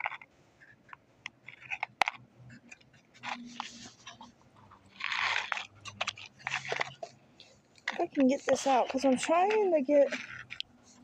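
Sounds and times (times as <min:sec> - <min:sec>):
crinkly rustling of packaging: 0:03.1 - 0:11.0.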